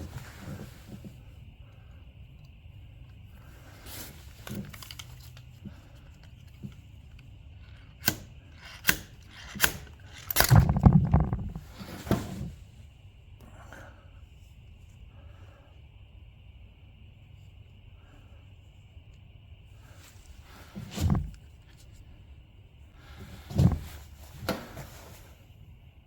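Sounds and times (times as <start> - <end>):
clattering burst: 8.6 - 11.7.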